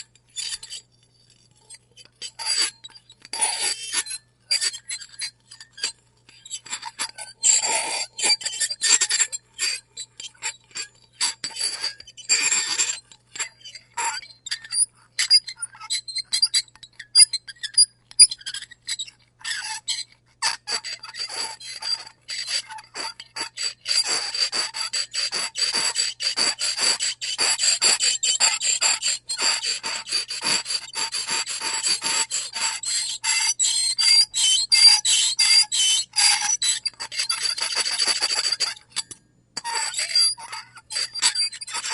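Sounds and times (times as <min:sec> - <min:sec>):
fork scraping across a plate: 0:10.1 - 0:17.0, 0:19.6 - 0:41.9.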